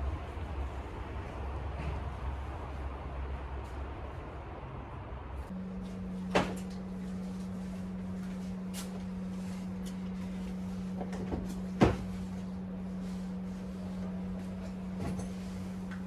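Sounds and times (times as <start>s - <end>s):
steady low hum: 5.3s - 16.0s.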